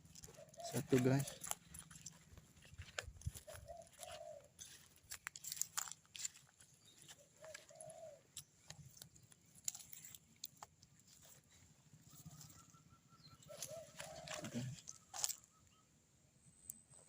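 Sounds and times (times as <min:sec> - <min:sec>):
faint dove cooing: 0:00.2 - 0:02.0, 0:02.6 - 0:04.9, 0:07.0 - 0:08.6, 0:11.6 - 0:15.8.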